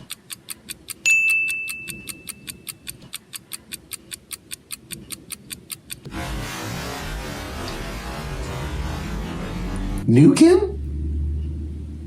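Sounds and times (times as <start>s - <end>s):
rapid clock ticking: 0.0s - 6.1s.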